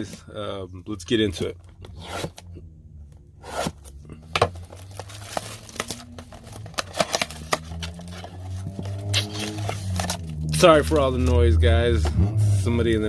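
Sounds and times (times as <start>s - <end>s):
car engine running: 1.2s - 13.0s
cellophane crinkling and tearing: 4.3s - 11.4s.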